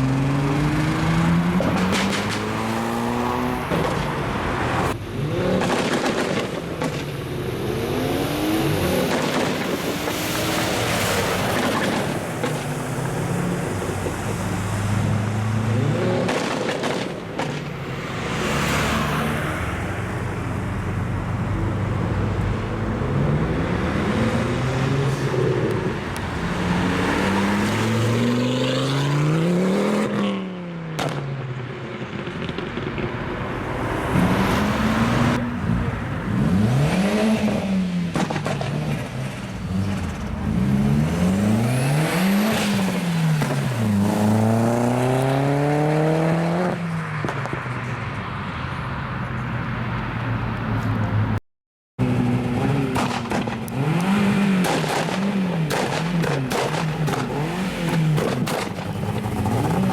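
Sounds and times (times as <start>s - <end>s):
car engines revving: 0.0s - 48.0s, 52.0s - 59.9s
exhaust pops and bangs: 5.5s - 7.1s, 9.0s - 9.9s, 16.2s - 17.8s, 31.0s - 31.3s, 38.1s - 39.1s, 52.9s - 59.6s.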